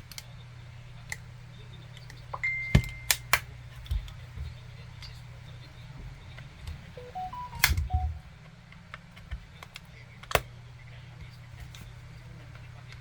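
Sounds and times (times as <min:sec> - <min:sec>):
low steady hum: 0:00.5 - 0:08.6
rising electronic beeps: 0:07.0 - 0:08.3.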